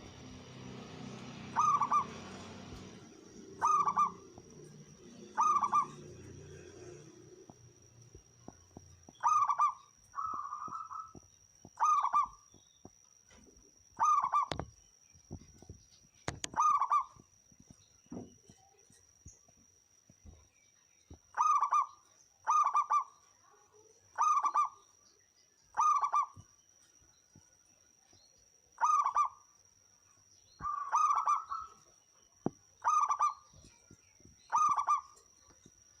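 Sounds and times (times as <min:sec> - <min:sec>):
dove cooing: 0:01.0 - 0:07.5, 0:09.2 - 0:11.2, 0:11.8 - 0:12.4, 0:14.0 - 0:14.7, 0:16.4 - 0:17.2, 0:21.4 - 0:21.9, 0:22.5 - 0:23.1, 0:24.2 - 0:24.8, 0:25.8 - 0:26.4, 0:28.8 - 0:29.4, 0:30.6 - 0:31.8, 0:32.8 - 0:33.4, 0:34.5 - 0:35.2.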